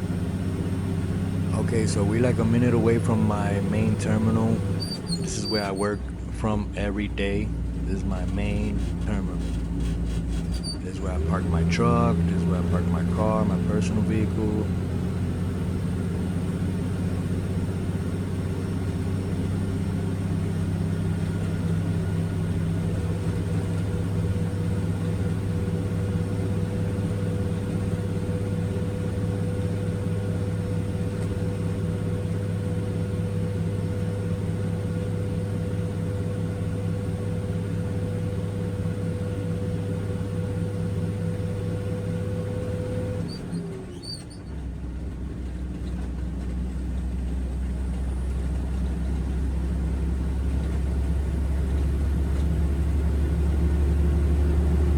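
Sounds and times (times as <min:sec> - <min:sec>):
diesel truck engine running: 0:00.0 - 0:54.9
thin steady whine: 0:01.5 - 0:09.4.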